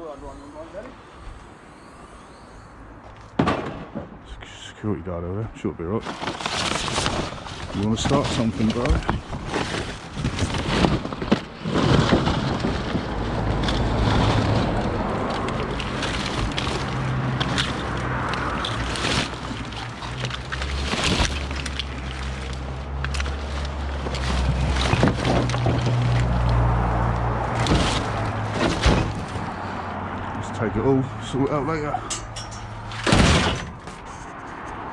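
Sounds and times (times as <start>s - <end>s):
scrap metal knocking and clattering: 27.4s - 29.8s, 32.0s - 34.7s.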